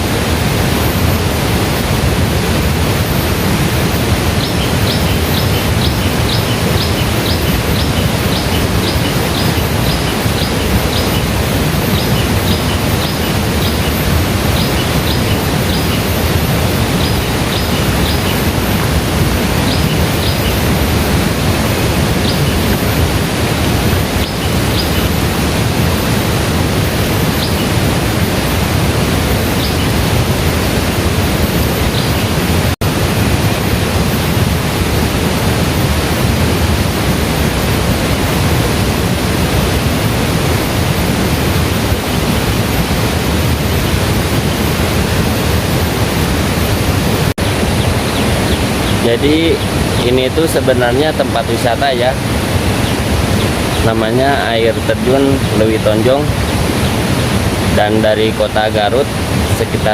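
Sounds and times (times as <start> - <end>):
waterfall rushing: 0.0 - 59.9
bird chirping: 3.7 - 32.6, 47.4 - 59.0.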